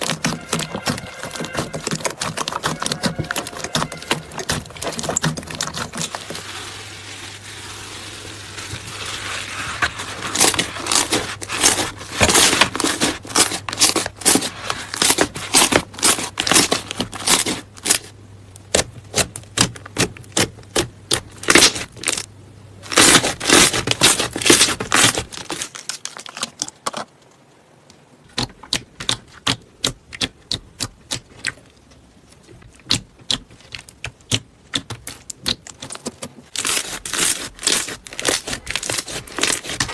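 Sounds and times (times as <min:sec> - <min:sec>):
low hum: 0:00.0 - 0:12.8
slime popping and crackling: 0:00.0 - 0:22.3, 0:22.9 - 0:26.8, 0:32.7 - 0:39.9.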